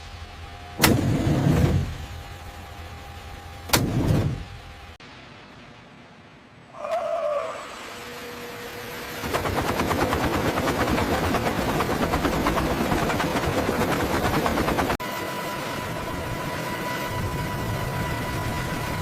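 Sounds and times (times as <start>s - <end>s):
engine running with high whine: 0.0s - 5.2s, 6.9s - 19.0s
helicopter rotor blades chopping: 8.7s - 19.0s.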